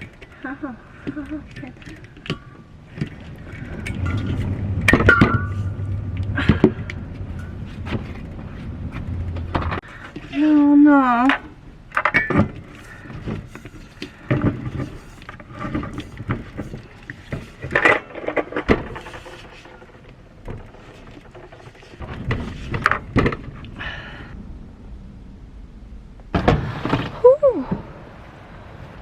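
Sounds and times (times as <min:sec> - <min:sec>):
knocks and clatter of objects: 0:00.0 - 0:10.5, 0:11.2 - 0:23.9
rustling of handled objects: 0:00.0 - 0:24.4.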